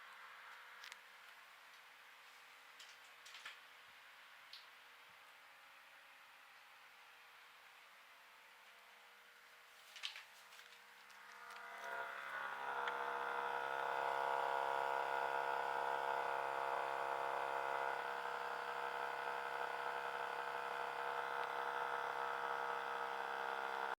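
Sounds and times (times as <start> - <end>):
air conditioner whining hum: 0.0 - 23.9.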